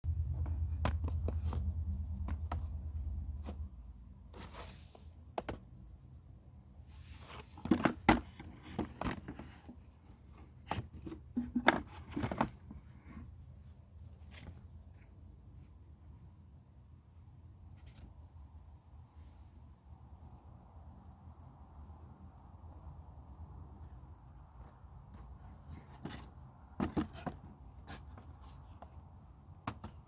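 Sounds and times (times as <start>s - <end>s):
low hum: 0.0s - 4.2s
hard objects being handled: 0.2s - 3.7s, 6.9s - 13.4s, 24.4s - 30.0s.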